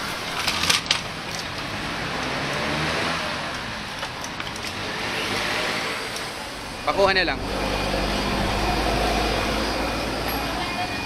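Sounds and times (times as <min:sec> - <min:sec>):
road noise: 0:00.0 - 0:11.0
car engine passing: 0:01.5 - 0:04.0, 0:04.6 - 0:10.7.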